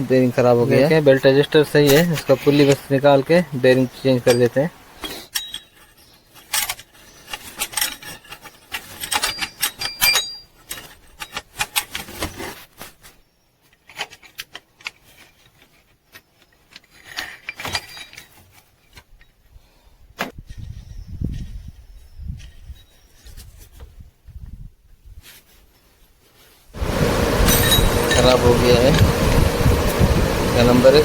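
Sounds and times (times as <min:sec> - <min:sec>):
metal tools clinking: 0:01.5 - 0:12.2, 0:16.2 - 0:19.3, 0:26.8 - 0:29.2
low rumbling handling noise: 0:26.8 - 0:31.0.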